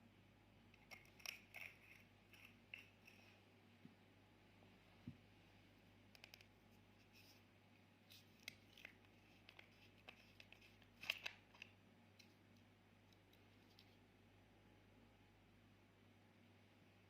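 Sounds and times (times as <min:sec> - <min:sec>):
low steady hum: 0:00.0 - 0:17.0
small objects clicking and tapping: 0:00.8 - 0:03.3, 0:06.1 - 0:06.6.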